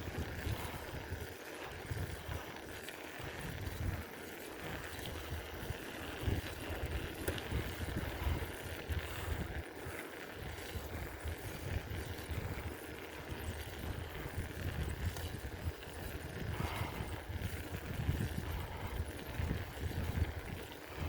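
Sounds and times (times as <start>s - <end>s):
bicycle clicks and rattles: 0.0s - 21.0s
wind buffeting microphone: 0.0s - 21.0s.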